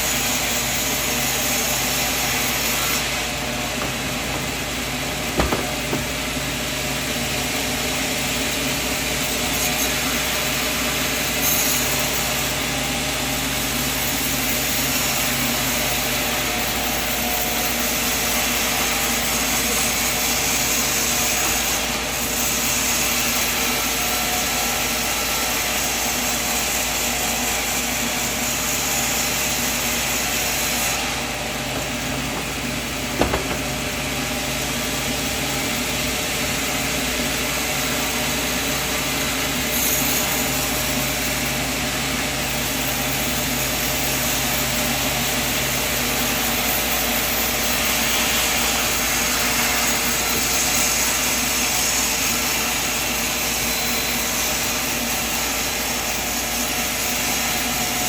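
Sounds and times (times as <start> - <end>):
sawmill machinery sawing wood: 0.0 - 58.0
sharp knock: 5.3 - 6.2, 31.7 - 33.9.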